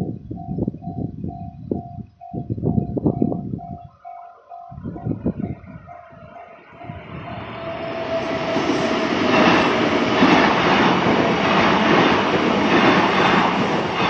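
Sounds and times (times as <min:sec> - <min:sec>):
level crossing warning bell: 0:01.8 - 0:09.5.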